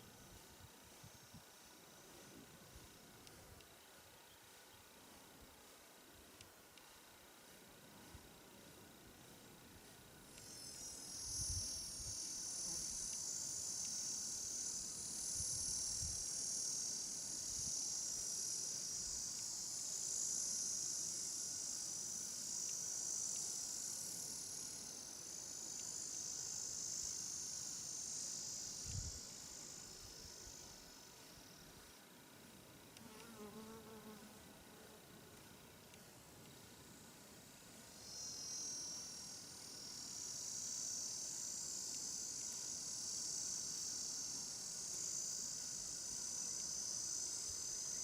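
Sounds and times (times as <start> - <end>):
insect buzzing: 0.0 - 8.5, 9.1 - 48.0.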